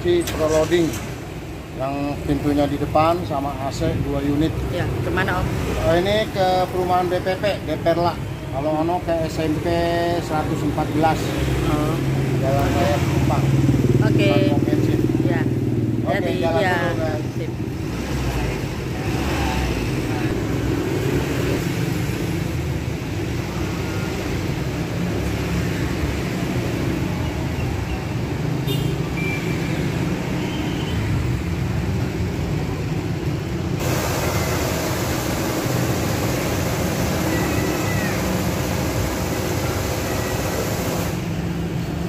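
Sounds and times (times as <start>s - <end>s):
vehicle engine and road rumble: 0.0s - 42.0s
hiss of rushing air: 33.8s - 41.4s.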